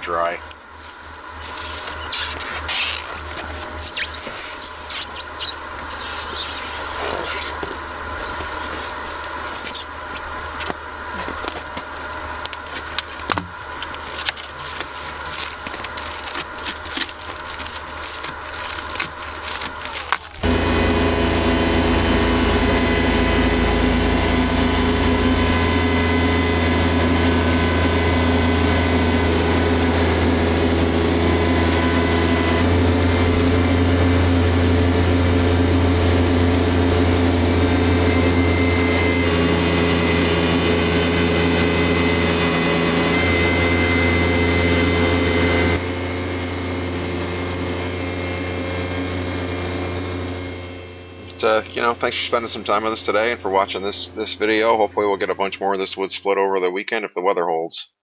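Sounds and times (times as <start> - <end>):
engine running steadily: 0.0 - 55.6.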